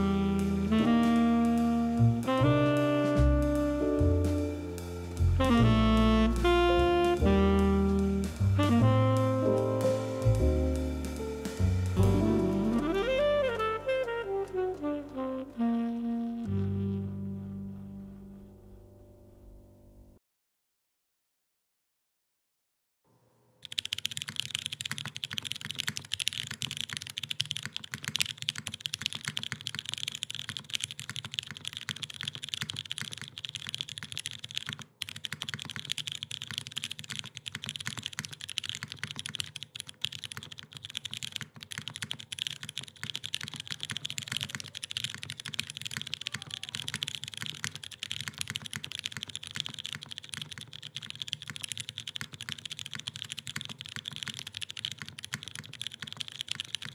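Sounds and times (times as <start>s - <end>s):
rapid keyboard typing: 23.6s - 56.9s.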